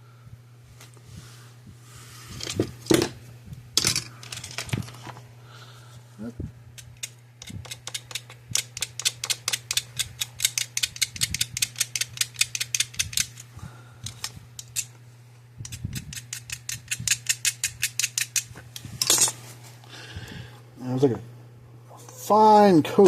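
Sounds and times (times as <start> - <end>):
hand tool scraping wire: 6.8 - 13.5, 15.7 - 19.4.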